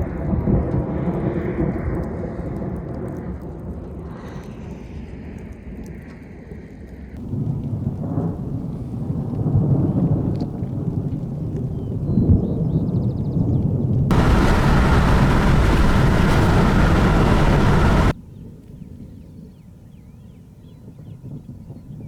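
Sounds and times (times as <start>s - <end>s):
rumble of thunder: 14.1s - 18.2s.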